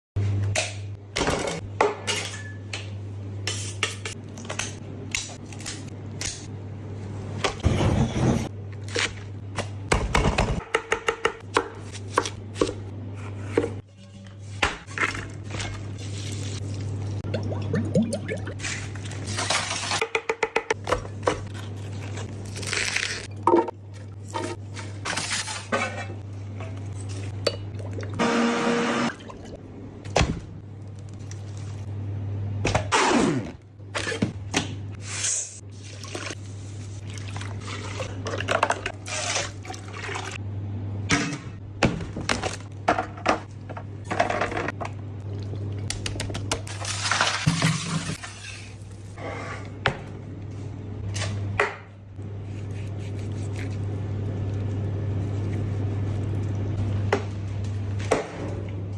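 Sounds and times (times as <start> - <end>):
liquid pouring and splashing: 37.0 - 38.2.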